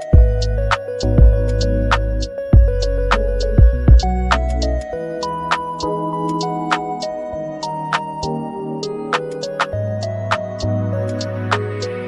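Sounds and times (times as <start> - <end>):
sustained keyboard notes: 0.0 - 12.0
percussive beat: 0.1 - 4.7
bass line: 0.1 - 4.8.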